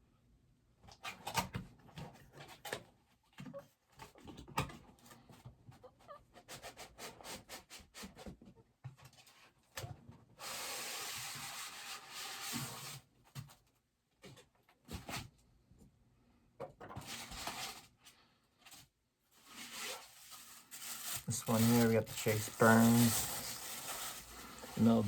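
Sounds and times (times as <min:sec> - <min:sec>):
cardboard packaging rustling: 0:19.4 - 0:25.0.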